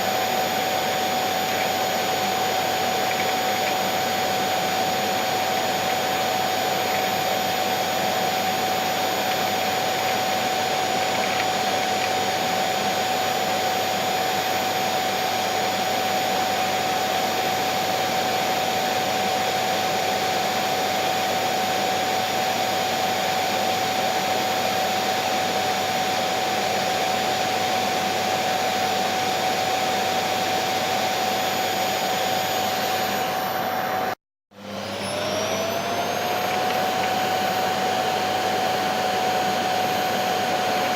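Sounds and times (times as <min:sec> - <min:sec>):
vacuum cleaner running: 0:00.0 - 0:40.9.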